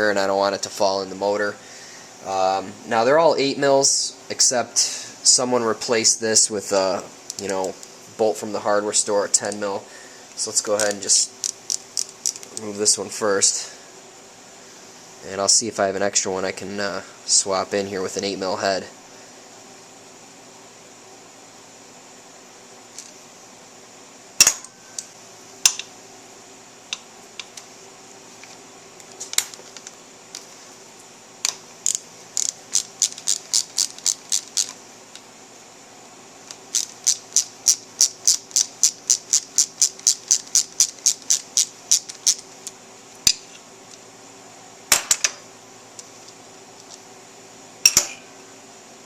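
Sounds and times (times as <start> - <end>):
socket ratchet clicking: 10.8 - 12.6, 31.8 - 34.8, 36.7 - 42.4.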